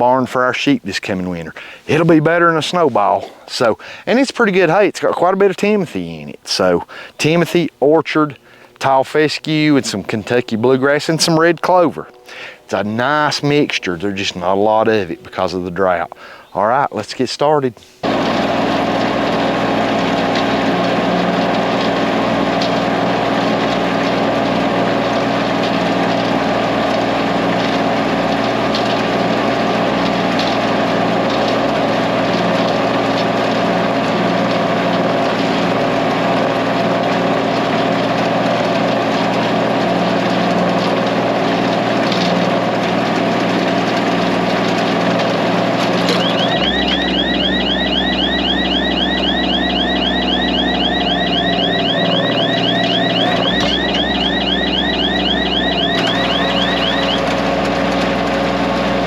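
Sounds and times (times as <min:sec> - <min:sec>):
diesel tractor engine running: 0:18.0 - 0:59.0
high repeating rising chirp: 0:46.1 - 0:57.4.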